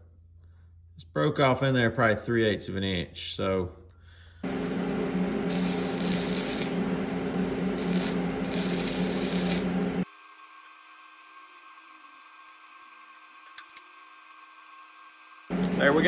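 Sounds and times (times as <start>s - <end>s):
buzzing hum: 4.4s - 10.0s, 15.5s - 16.0s
welding arc crackling hiss: 4.4s - 10.0s, 15.5s - 16.0s.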